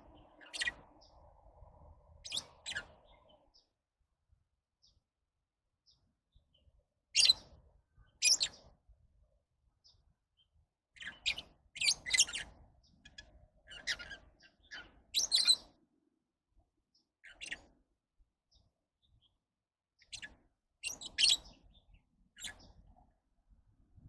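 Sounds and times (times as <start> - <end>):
lovebirds chirping: 0.0 - 1.3, 2.2 - 3.7, 8.2 - 8.7, 11.0 - 15.8, 20.0 - 22.8.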